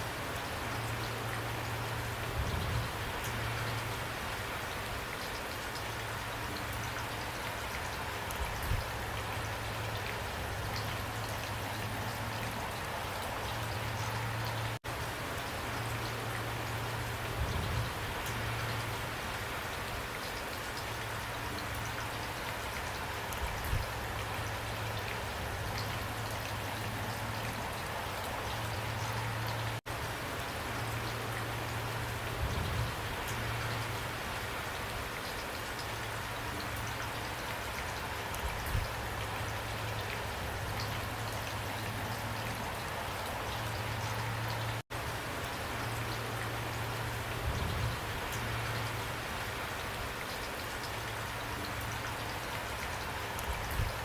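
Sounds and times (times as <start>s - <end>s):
steady rain hiss: 0.0s - 54.0s
raindrops ticking: 33.0s - 54.0s.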